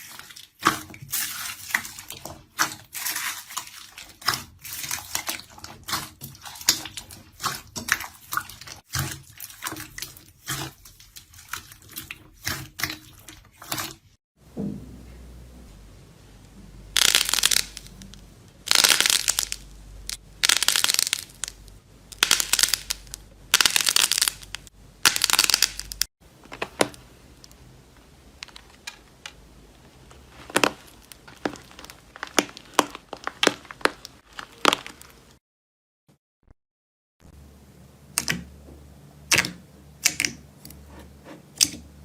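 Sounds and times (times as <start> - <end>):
slime squishing: 0.0 - 14.2, 17.0 - 35.4
crackling pops and clicks: 17.0 - 35.4, 39.3 - 40.4.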